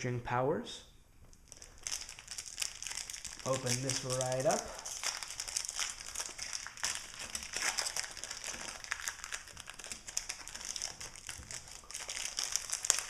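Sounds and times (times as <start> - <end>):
foil wrapper crinkling: 1.3 - 13.0.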